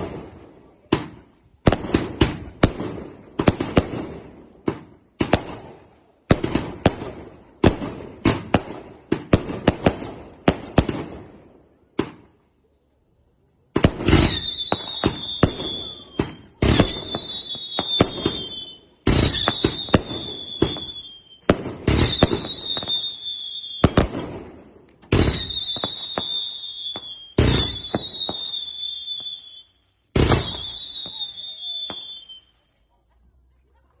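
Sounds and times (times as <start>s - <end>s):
fireworks bangs: 0.0s - 12.4s, 13.6s - 32.5s
fireworks falling whistle: 14.0s - 24.1s, 25.1s - 32.6s.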